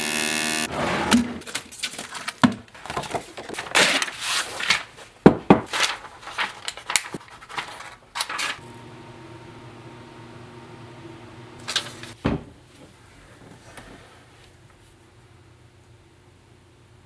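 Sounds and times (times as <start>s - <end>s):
power tool running: 0.0s - 0.8s, 8.6s - 12.2s.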